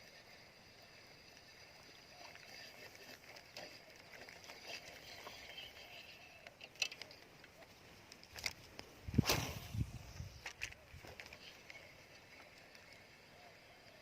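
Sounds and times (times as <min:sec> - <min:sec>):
soft clicks and rustles: 0:02.2 - 0:09.3, 0:10.1 - 0:13.2.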